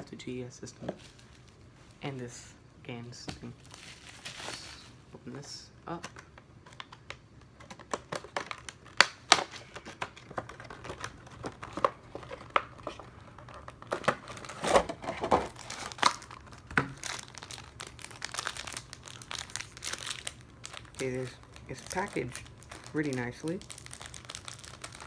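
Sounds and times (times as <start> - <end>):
packaging crinkling: 3.5 - 4.9, 6.0 - 25.0
packaging tearing: 7.7 - 25.0.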